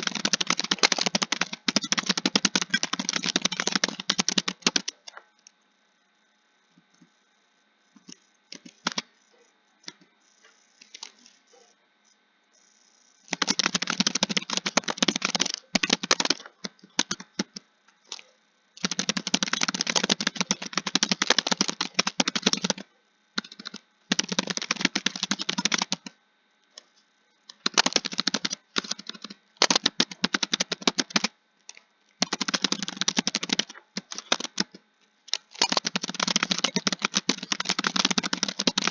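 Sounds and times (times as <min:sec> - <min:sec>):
keyboard typing: 0:00.0 - 0:05.2, 0:08.0 - 0:09.1, 0:13.2 - 0:26.2, 0:27.5 - 0:31.3, 0:32.2 - 0:38.9.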